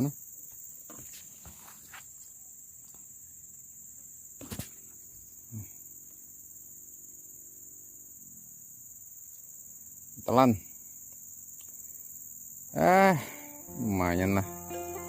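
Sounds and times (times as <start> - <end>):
insects chirring: 0.0 - 15.0.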